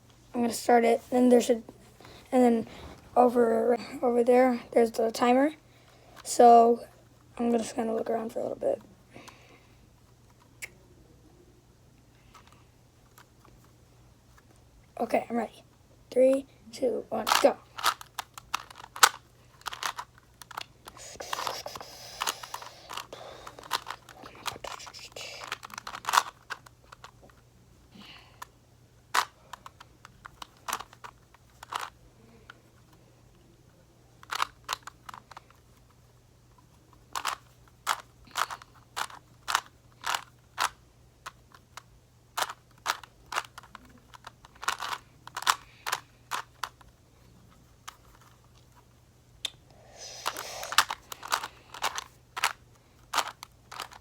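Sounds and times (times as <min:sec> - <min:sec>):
puzzle cube layers clicking: 0:17.2 - 0:27.2, 0:34.2 - 0:35.6, 0:37.1 - 0:41.8, 0:42.4 - 0:46.8, 0:50.2 - 0:54.0.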